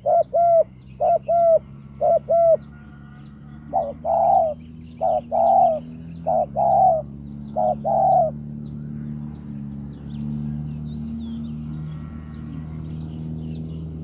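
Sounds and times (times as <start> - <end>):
dove cooing: 0.0 - 8.6
small bird chirping: 0.0 - 14.0.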